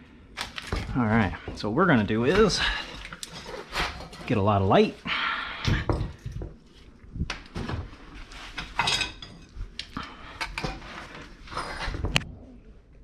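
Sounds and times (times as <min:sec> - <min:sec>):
metal tools clinking: 0:08.7 - 0:09.5.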